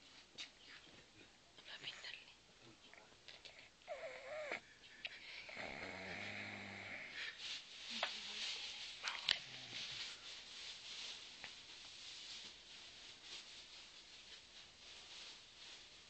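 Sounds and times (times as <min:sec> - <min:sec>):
breathy hiss: 0:03.5 - 0:12.4
person snoring: 0:05.5 - 0:07.2.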